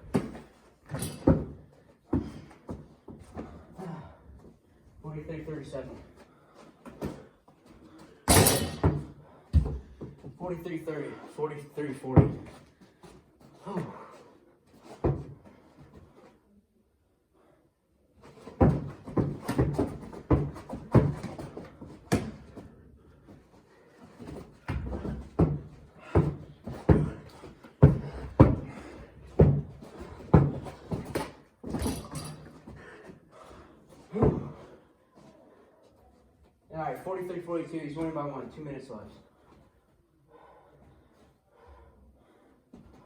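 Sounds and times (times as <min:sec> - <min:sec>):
basketball bouncing on hard floor: 0:08.3 - 0:10.1, 0:18.6 - 0:22.6, 0:24.6 - 0:32.4.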